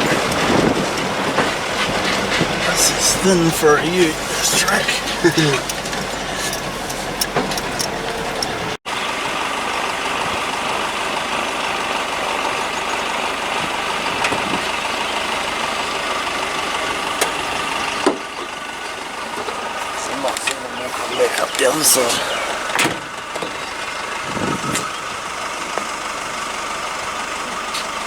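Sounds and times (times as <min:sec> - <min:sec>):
vehicle engine running: 0:00.0 - 0:28.0
small clicks and knocks: 0:05.3 - 0:08.6.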